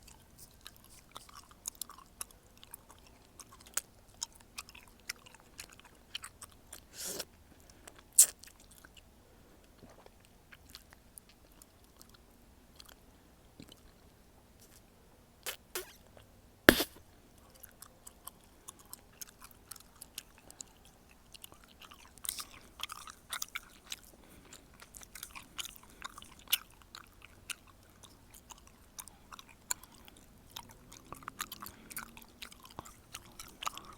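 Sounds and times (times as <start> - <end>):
chewing gum smacks: 0.1 - 6.9, 13.6 - 14.0, 15.4 - 33.9
gum snaps: 15.4 - 16.0, 16.7 - 17.0.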